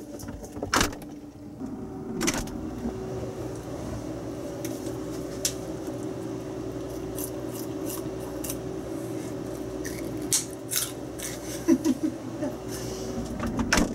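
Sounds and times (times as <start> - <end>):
steady low hum: 0.0 - 13.9
rabbit crunching greens: 4.7 - 11.8.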